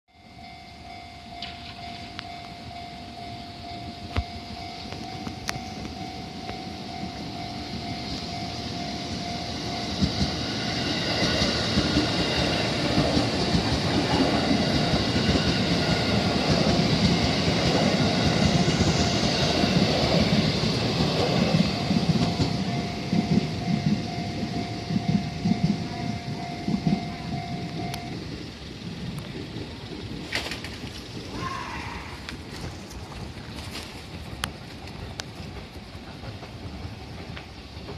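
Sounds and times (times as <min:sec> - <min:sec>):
level crossing warning bell: 0:00.1 - 0:28.9
electric train passing: 0:00.1 - 0:37.9.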